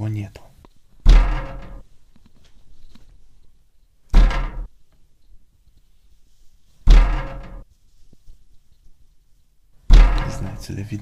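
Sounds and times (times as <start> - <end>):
loud bangs on a window: 1.0 - 1.8, 4.1 - 4.7, 6.8 - 7.7, 9.9 - 10.6
window glass ringing: 1.1 - 1.8, 4.1 - 4.7, 6.9 - 7.6.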